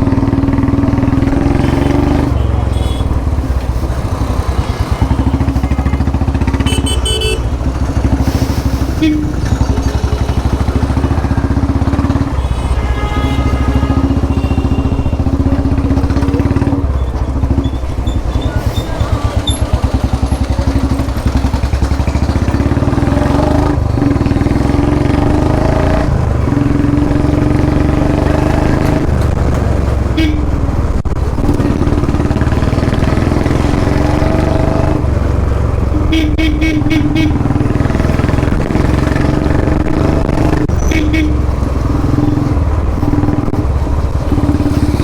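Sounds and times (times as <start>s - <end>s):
vehicle horn beeping: 1.4s - 3.4s, 5.2s - 19.9s, 30.1s - 30.6s, 35.9s - 37.8s, 40.7s - 41.7s.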